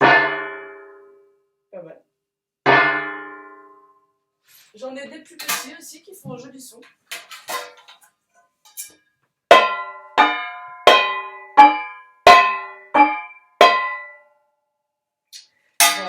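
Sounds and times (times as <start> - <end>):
padded spoon striking ringing dishes: 9.5 - 14.2, 15.8 - 16.0.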